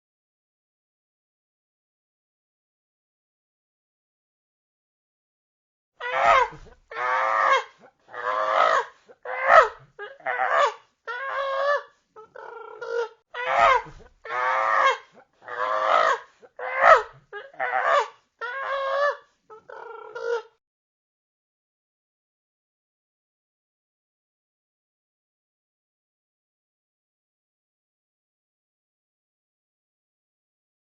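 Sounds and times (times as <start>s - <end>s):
chimpanzee calls: 6.0s - 20.6s.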